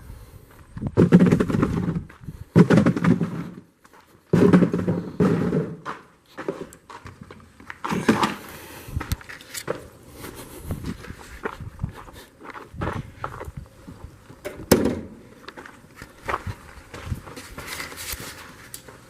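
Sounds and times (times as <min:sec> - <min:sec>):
rustling and knocking handling noise: 0:00.9 - 0:09.9.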